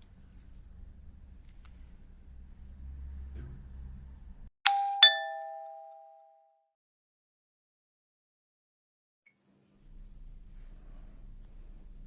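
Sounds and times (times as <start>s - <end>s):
two-note descending chime: 4.7s - 6.4s.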